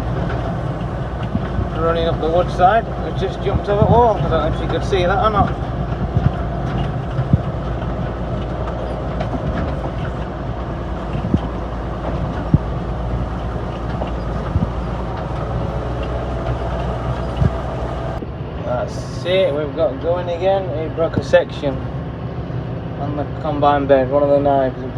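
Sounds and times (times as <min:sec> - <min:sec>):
sharp clanks and rattles: 0:00.0 - 0:18.2
diesel farm machinery engine drone: 0:00.0 - 0:24.9.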